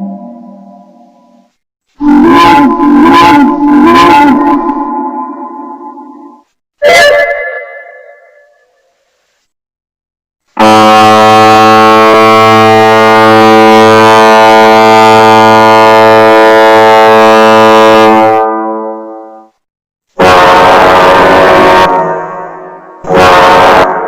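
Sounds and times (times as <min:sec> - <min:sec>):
tugboat whistle blast: 0:10.6 - 0:18.5, 0:20.2 - 0:24.0.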